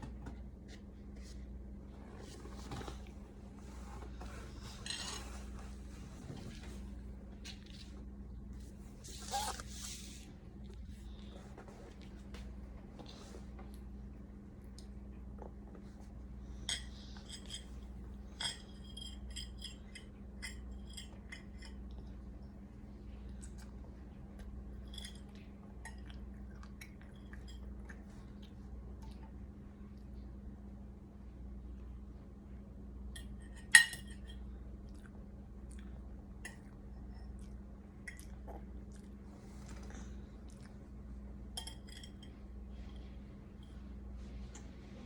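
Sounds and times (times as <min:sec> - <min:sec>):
utensil clinking against a dish: 0:41.6 - 0:42.4.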